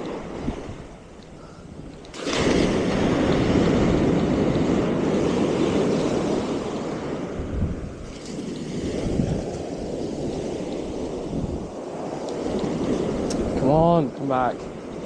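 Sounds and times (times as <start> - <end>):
wave breaking on beach: 2.1 - 15.0.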